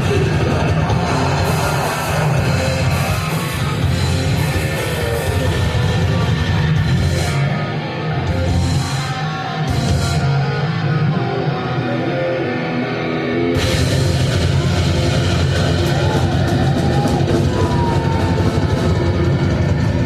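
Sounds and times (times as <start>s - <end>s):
heavy metal band playing live: 0.0s - 20.0s.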